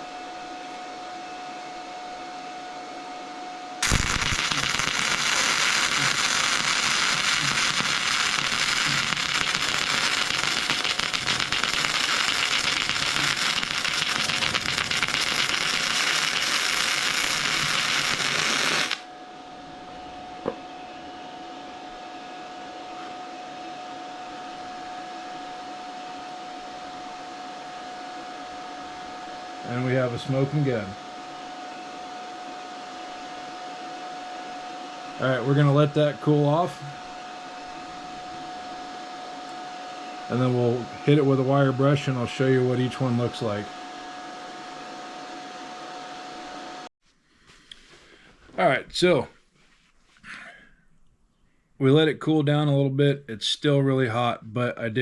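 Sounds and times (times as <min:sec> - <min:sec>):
hum with thin whine: 0:00.0 - 0:55.0
welder arc crackling: 0:03.8 - 0:19.1.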